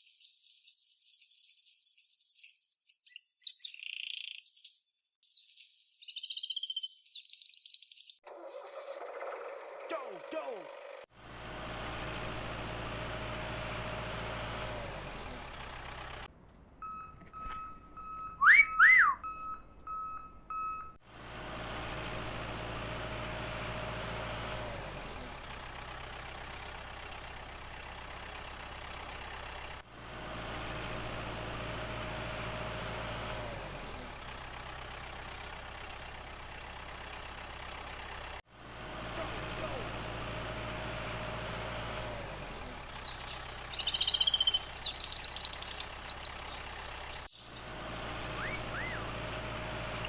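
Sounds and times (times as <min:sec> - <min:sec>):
engine hum: 0:10.8 - 0:50.0
rising and falling whistles: 0:16.8 - 0:21.0, 0:43.0 - 0:50.0.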